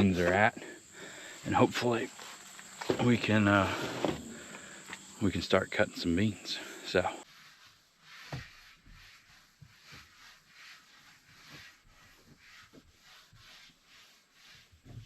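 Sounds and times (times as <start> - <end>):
cloth rubbing a window: 7.2 - 15.0.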